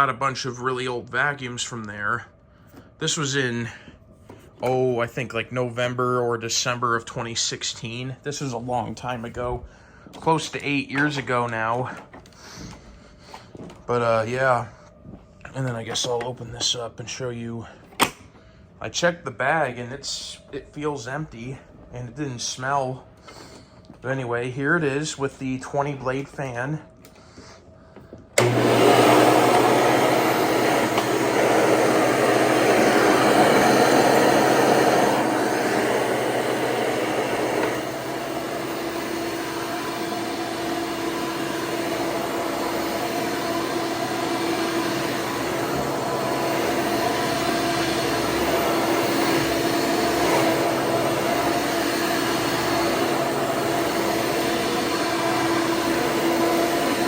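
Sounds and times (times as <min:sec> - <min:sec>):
vacuum cleaner running: 0:28.4 - 0:57.0.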